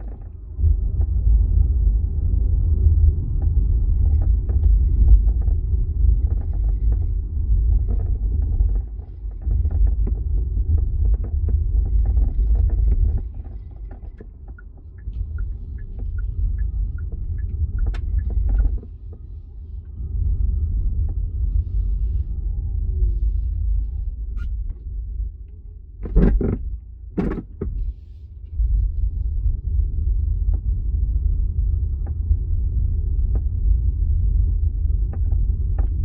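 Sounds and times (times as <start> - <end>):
trim rattles and creaks: 0.0 - 0.4, 4.0 - 16.3, 17.0 - 19.2, 26.0 - 27.9
car road rumble: 0.0 - 36.0.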